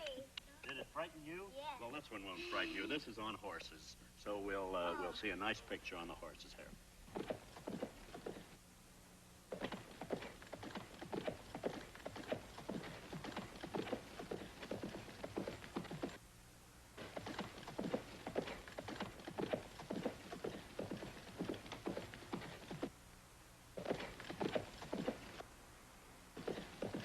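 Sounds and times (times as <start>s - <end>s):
horse hoofbeats clip-clopping: 7.1s - 8.6s, 9.5s - 16.2s, 17.0s - 22.9s, 23.8s - 25.4s, 26.4s - 27.0s.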